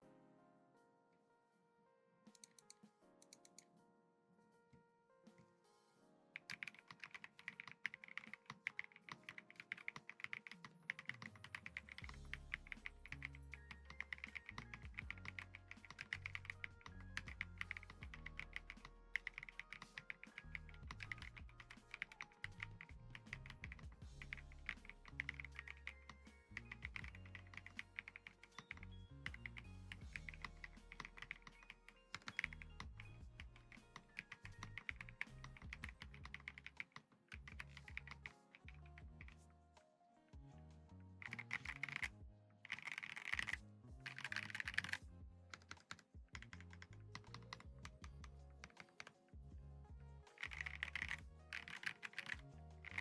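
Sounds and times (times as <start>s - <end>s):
mechanical keyboard typing: 2.4s - 3.7s, 6.4s - 39.4s, 41.2s - 49.2s, 50.3s - 53.0s
background music with bass: 16.5s - 31.9s, 32.5s - 36.6s.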